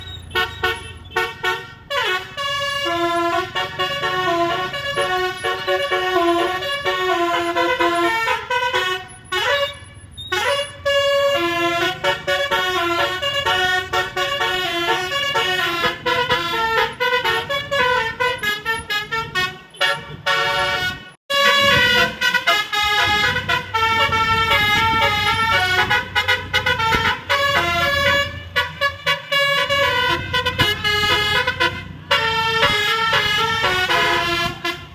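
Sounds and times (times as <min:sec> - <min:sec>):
musical air horn melody: 0:00.4 - 0:34.9.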